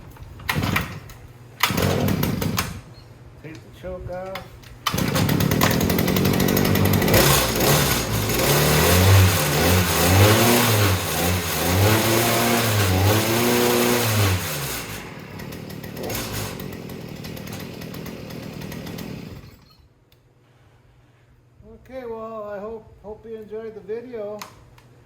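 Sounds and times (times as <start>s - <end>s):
two-stroke engine revving: 1.6s - 2.8s, 4.9s - 19.6s.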